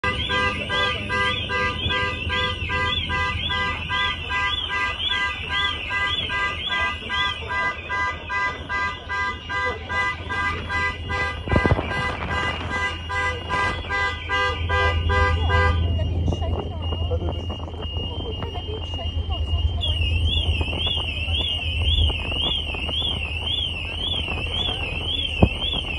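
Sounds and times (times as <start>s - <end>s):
car alarm beeping: 0.0s - 25.9s
warbling car alarm siren: 0.0s - 25.9s.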